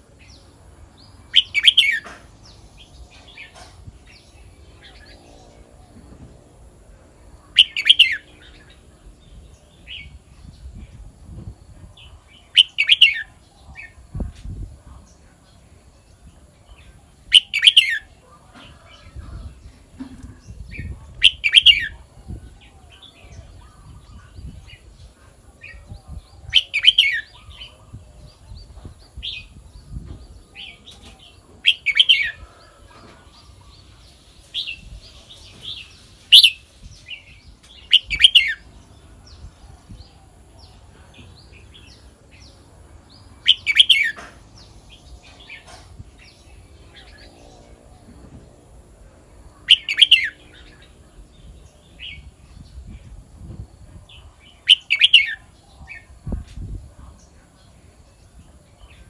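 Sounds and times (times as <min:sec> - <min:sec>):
bulbul singing: 0:00.1 - 0:05.6, 0:07.5 - 0:10.6, 0:12.0 - 0:14.0, 0:16.6 - 0:18.2, 0:19.3 - 0:24.9, 0:25.6 - 0:28.0, 0:28.6 - 0:32.6, 0:34.6 - 0:47.6, 0:49.6 - 0:53.0, 0:54.1 - 0:56.3.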